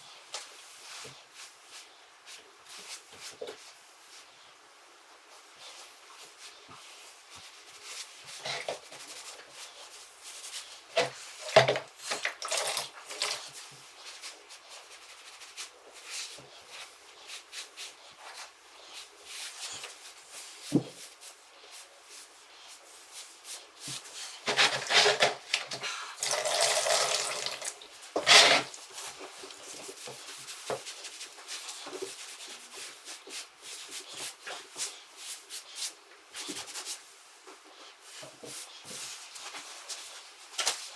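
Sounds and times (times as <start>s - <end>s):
water splashing and dripping: 26.2s - 27.8s.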